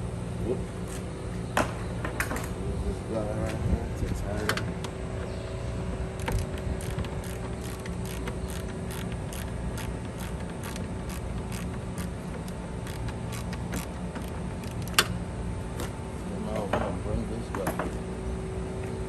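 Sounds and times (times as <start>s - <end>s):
steady hum: 2.6s - 16.5s
ratchet clicking: 6.2s - 15.1s.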